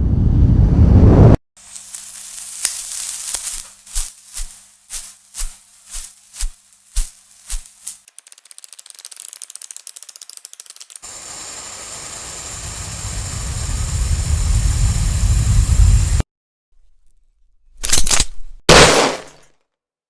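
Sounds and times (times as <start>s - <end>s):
rumbling noise: 0.0s - 1.4s, 12.5s - 16.2s
fast ratcheting clicks: 8.0s - 11.0s.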